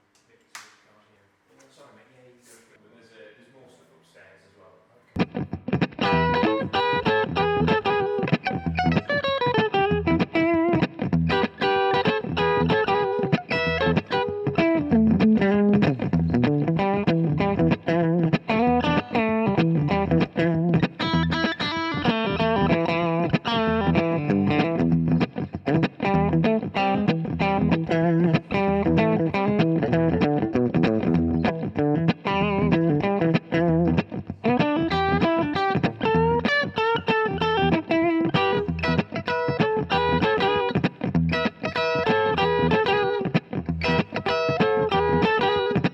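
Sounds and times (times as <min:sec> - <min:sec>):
electric guitar picked notes: 0:05.2 - 0:45.9.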